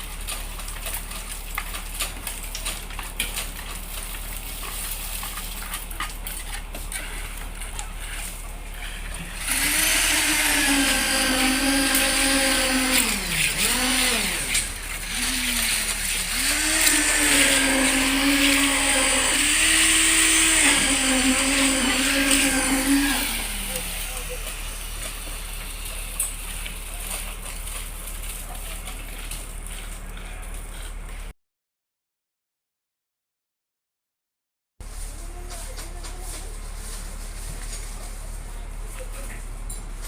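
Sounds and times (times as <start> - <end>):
small engine running: 0.0 - 31.3.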